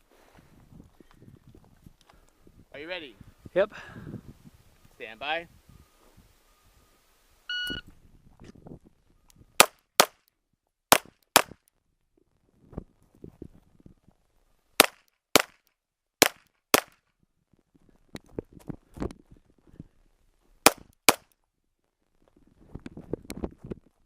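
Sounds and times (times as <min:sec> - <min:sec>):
shot timer beep: 0:07.5 - 0:07.9
pistol shots: 0:09.6 - 0:10.2, 0:10.9 - 0:11.6, 0:14.8 - 0:15.6, 0:16.2 - 0:17.0.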